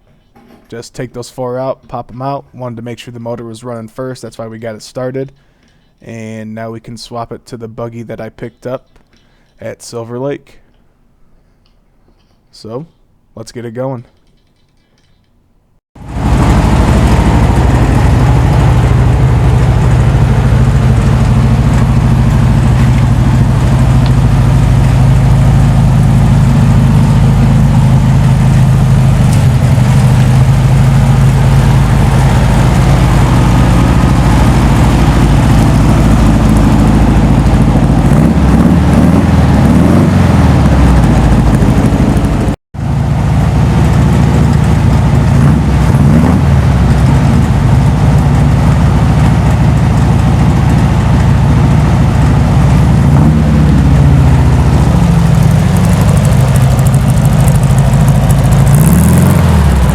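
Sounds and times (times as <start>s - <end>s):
car engine running: 16.0s - 59.9s.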